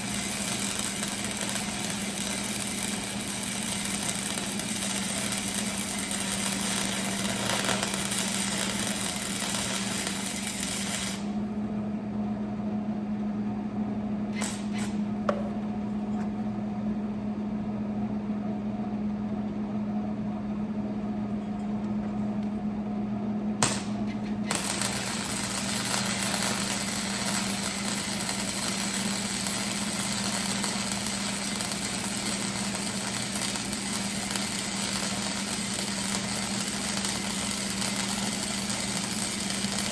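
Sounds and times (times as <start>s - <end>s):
welding arc crackling: 0.0s - 11.5s, 14.4s - 16.4s, 23.6s - 39.9s
steady low hum: 0.0s - 39.9s.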